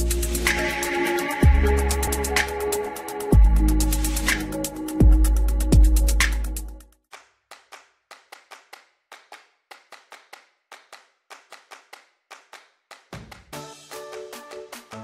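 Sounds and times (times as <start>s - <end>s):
bass sweep: 0.0s - 6.8s
electronic music: 0.0s - 6.8s, 13.5s - 15.0s
hand claps: 7.1s - 15.0s.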